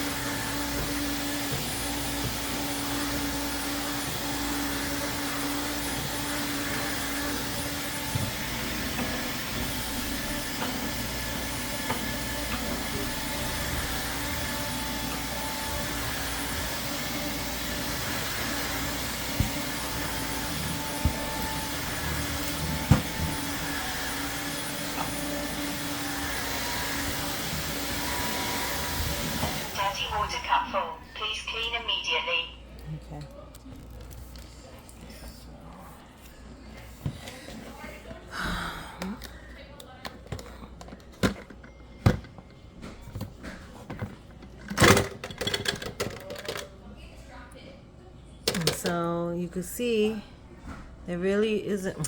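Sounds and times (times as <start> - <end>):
vacuum cleaner running: 0.0 - 32.4.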